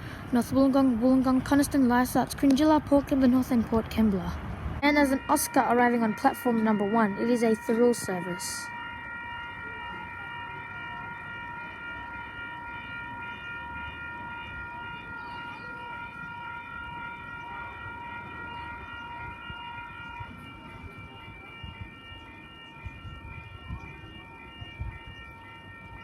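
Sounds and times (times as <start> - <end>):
train low rumble: 0.0 - 8.7
electric train high whine: 0.0 - 26.0.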